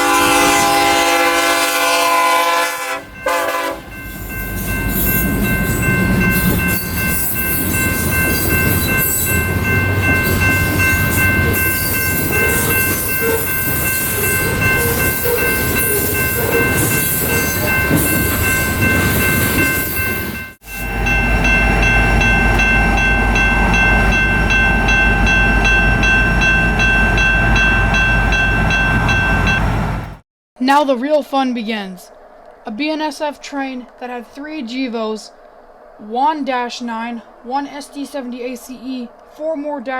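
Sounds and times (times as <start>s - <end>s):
freight train rumbling past: 0.0s - 30.2s.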